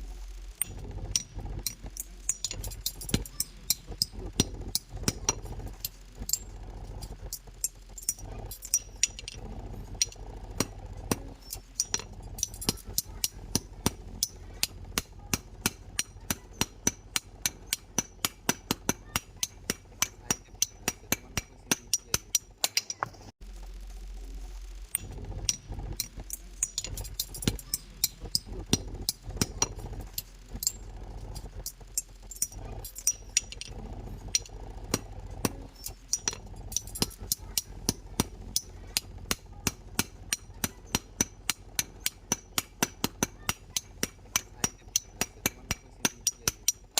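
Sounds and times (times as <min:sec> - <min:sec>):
low hum: 0:00.0 - 0:46.9
hammer striking metal on anvil: 0:10.0 - 0:23.2, 0:34.3 - 0:46.8.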